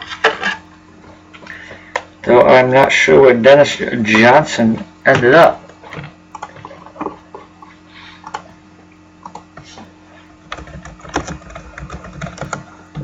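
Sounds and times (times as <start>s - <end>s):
faint electrical hum: 0.0s - 13.0s
keyboard typing: 9.2s - 9.7s, 10.4s - 13.0s.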